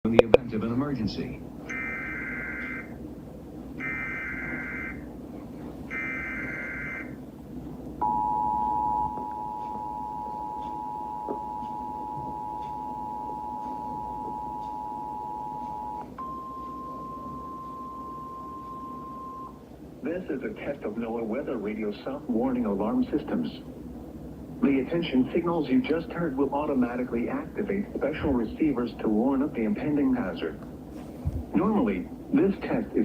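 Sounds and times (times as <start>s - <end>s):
steady alarm tone: 1.6s - 3.0s, 3.8s - 5.1s, 5.8s - 7.2s, 8.0s - 19.7s
screechy digital data bursts: 1.7s - 2.9s
two-tone attention signal: 1.7s - 2.9s, 8.0s - 19.6s.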